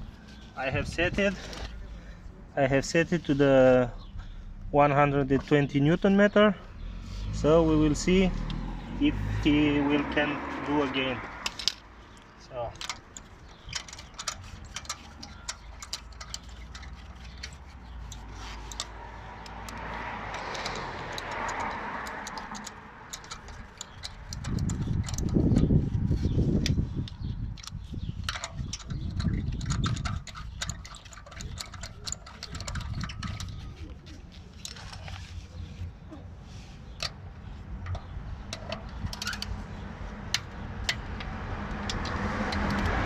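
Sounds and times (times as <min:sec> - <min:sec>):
deep rumbling: 0:00.0 - 0:12.2
torque wrench ratchet clicking: 0:12.8 - 0:25.7, 0:26.6 - 0:33.6, 0:37.8 - 0:39.6.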